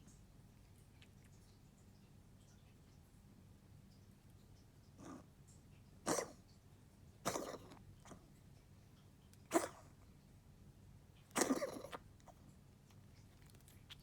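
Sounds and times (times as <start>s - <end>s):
pet coughing: 6.0s - 6.4s, 7.2s - 8.2s, 9.5s - 10.0s, 11.3s - 12.4s.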